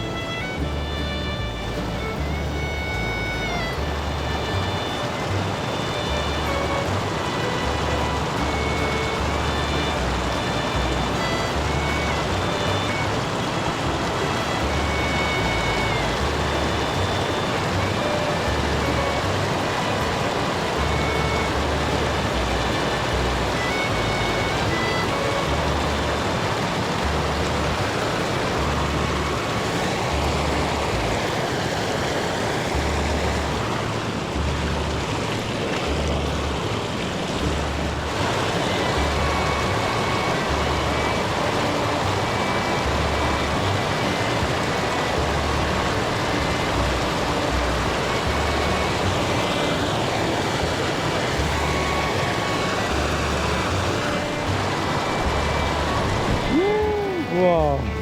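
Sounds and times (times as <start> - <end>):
music with low beat: 0.0 - 58.0
rushing stream water: 0.0 - 58.0.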